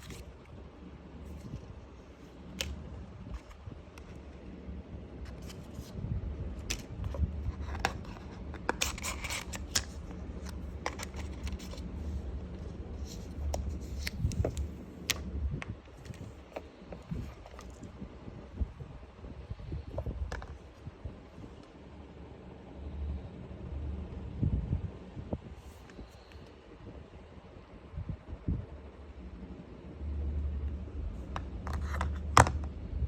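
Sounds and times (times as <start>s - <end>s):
steady low rumble: 0.0s - 33.0s
scratchy packaging rustle: 6.6s - 12.3s, 15.9s - 17.9s.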